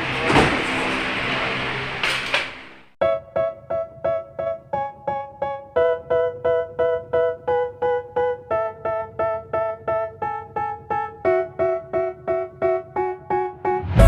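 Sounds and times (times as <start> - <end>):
keyboard repeated chords: 3.0 - 14.0.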